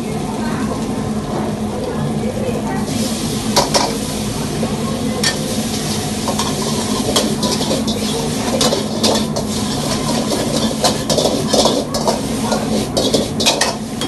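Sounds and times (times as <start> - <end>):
food sizzling in a wok: 0.0 - 14.0
steady hum: 0.0 - 14.0
metal ladle clanking on wok: 5.2 - 14.0.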